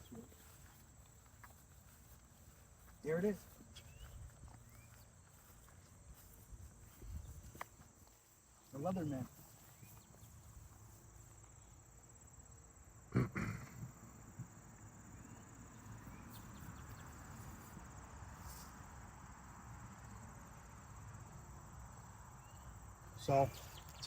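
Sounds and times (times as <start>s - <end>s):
insects chirring: 0.0s - 24.0s
person's low vocal sound: 13.1s - 14.0s.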